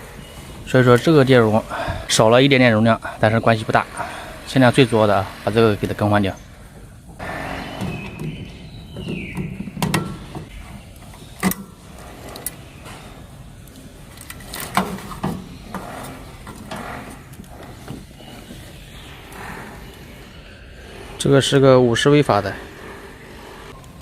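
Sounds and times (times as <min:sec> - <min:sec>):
tools clicking and knocking: 0:07.8 - 0:12.6.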